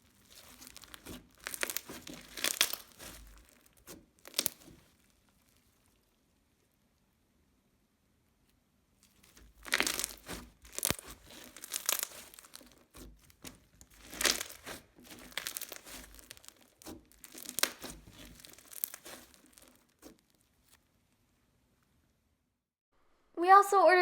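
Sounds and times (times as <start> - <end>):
slime being squished: 0.0 - 6.2, 9.0 - 20.9
bead crunches: 0.3 - 4.8, 9.1 - 20.3.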